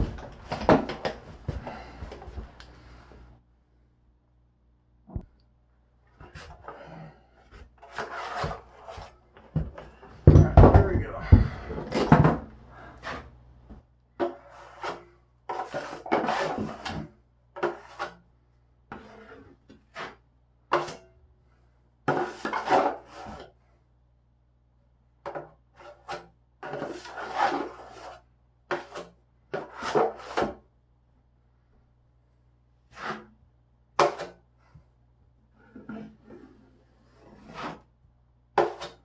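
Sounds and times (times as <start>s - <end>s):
drywall knife scraping compound: 6.2s - 10.1s, 11.3s - 13.4s, 14.2s - 18.3s, 18.9s - 23.6s, 25.3s - 30.7s, 32.8s - 34.8s, 35.5s - 39.0s.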